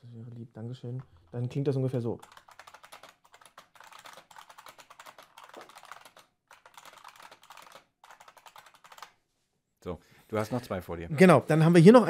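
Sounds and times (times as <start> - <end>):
keyboard keys typing fast: 1.3 - 9.2.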